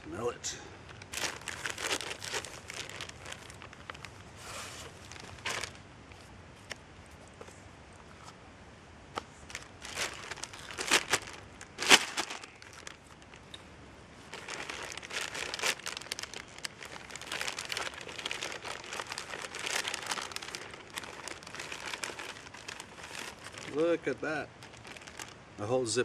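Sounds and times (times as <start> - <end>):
plastic crinkling: 0.9 - 6.8, 9.4 - 13.5, 14.2 - 25.4
packaging tearing: 1.0 - 5.8, 9.5 - 13.2, 14.3 - 23.9, 24.6 - 25.4.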